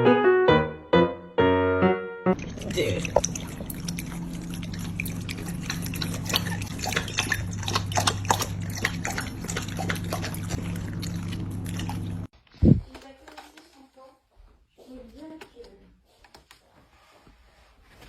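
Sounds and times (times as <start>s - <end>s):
water dripping and trickling: 2.4s - 12.3s.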